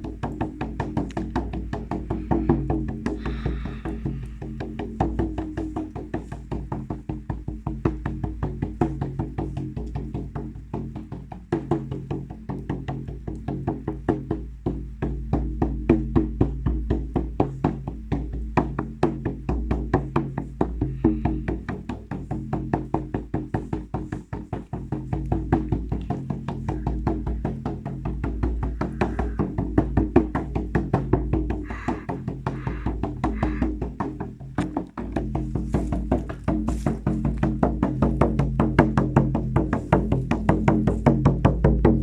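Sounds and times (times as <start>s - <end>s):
rapid percussive tapping beat: 0.0s - 42.0s
sustained low drone: 25.6s - 40.6s.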